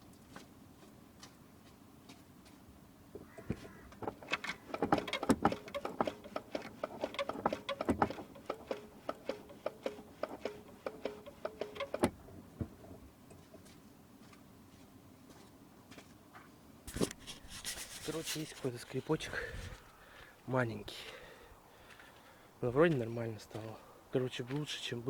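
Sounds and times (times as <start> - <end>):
clutch pedal linkage clicks: 3.2 - 13.6
clutch pedal squeaking: 3.2 - 13.7.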